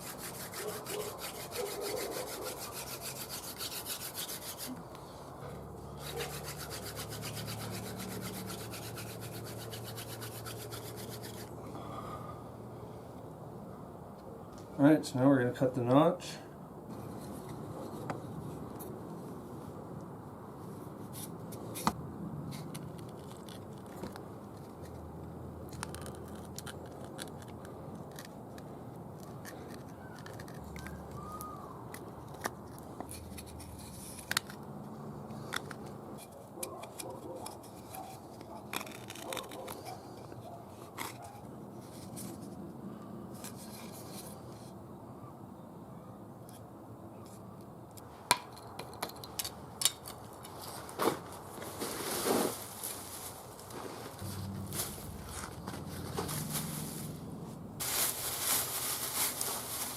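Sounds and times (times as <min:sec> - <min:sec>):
knife scraping wood: 0:00.0 - 0:05.0, 0:05.9 - 0:11.6, 0:35.4 - 0:42.6.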